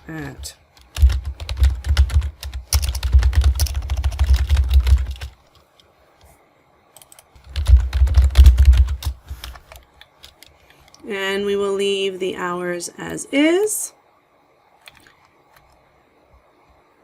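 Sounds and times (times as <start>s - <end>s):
fast typing on keyboard: 0.2s - 5.4s, 7.0s - 10.5s.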